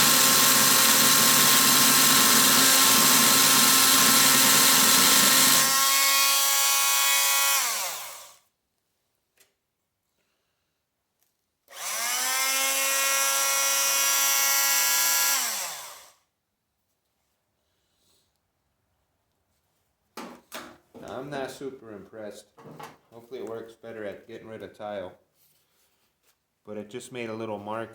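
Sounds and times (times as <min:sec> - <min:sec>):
multi-tool buzzing against screw: 0:00.0 - 0:08.4, 0:11.7 - 0:16.2
multi-tool high whine: 0:00.0 - 0:08.4, 0:11.7 - 0:16.2.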